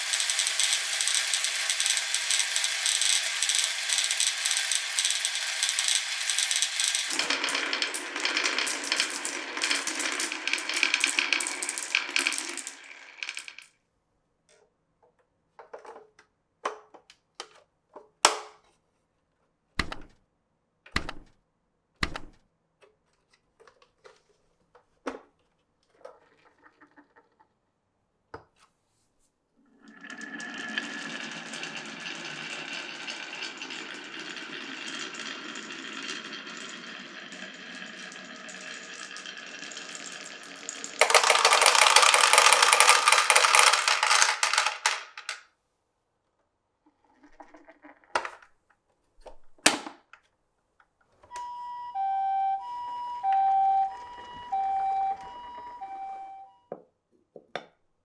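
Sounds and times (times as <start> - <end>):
marbles clicking and knocking: 0.0 - 13.7, 30.2 - 45.4
marbles rattling down wooden track: 0.0 - 13.7, 29.9 - 45.4.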